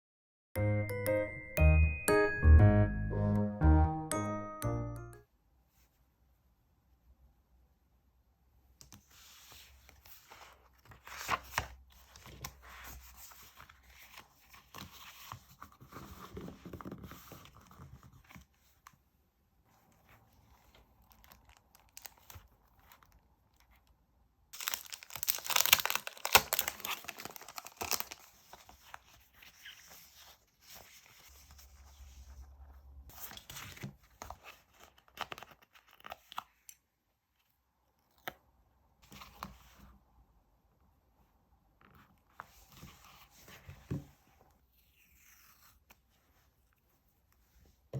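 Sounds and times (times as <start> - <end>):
paper and plastic crinkling: 24.6 - 31.6.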